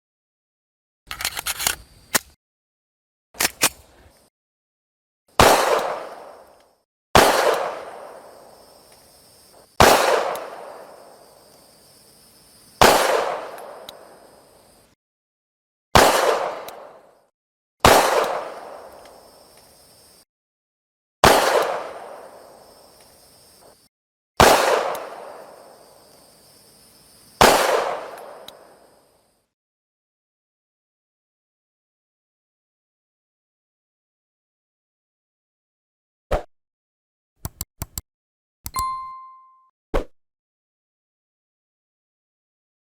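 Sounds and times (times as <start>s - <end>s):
pistol shots: 5.4s - 6.3s, 7.2s - 8.0s, 9.8s - 10.8s, 12.8s - 13.8s, 16.0s - 16.9s, 17.8s - 18.9s, 21.2s - 22.1s, 24.4s - 25.4s, 27.4s - 28.4s.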